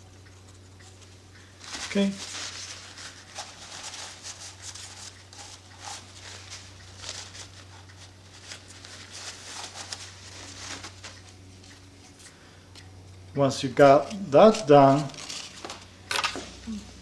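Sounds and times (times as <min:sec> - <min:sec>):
steady low hum: 0:00.0 - 0:17.0
paper rustling and rubbing: 0:01.0 - 0:12.3, 0:14.8 - 0:15.9.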